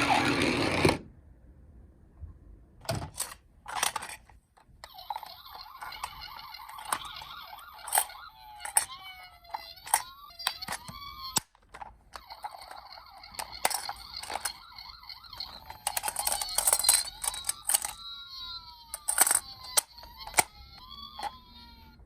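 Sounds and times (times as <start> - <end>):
toy siren wailing: 4.8 - 22.0.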